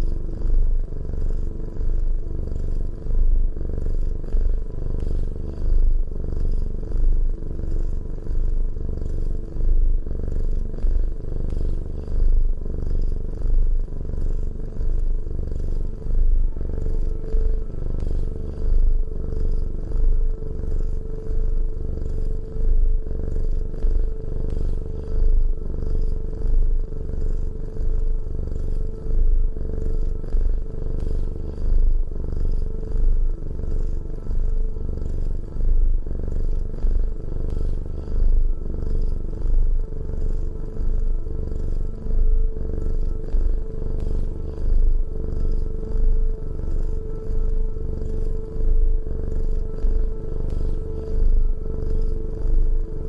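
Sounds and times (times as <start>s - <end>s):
cat purring: 0.0s - 53.0s.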